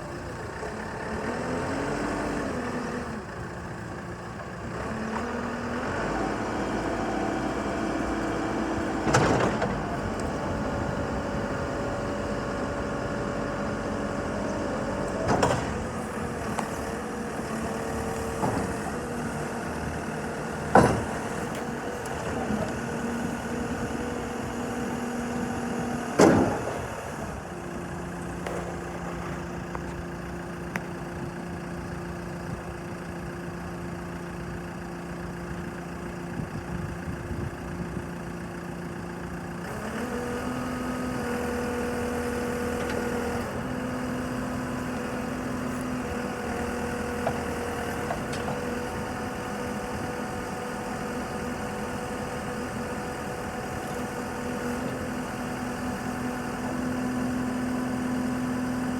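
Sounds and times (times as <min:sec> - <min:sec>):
diesel engine running: 0:00.0 - 0:58.9
loud sharp clunk: 0:26.2 - 0:26.8.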